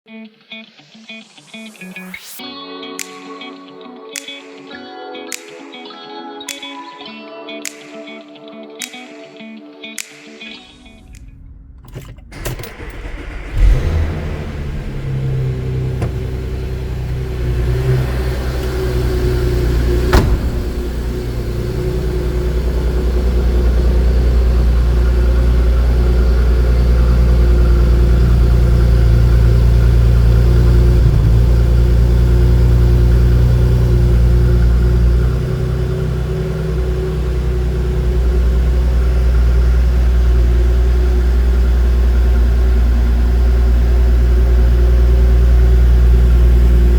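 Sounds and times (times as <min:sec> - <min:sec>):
engine exhaust drone: 0:11.1 - 0:46.9.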